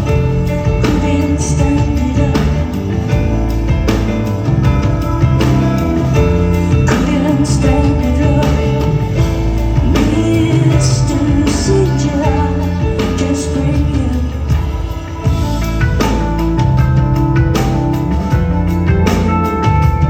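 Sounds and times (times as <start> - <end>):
woman singing: 0.0 - 3.5, 6.4 - 16.2
band playing keyboards bass drums: 0.0 - 20.0.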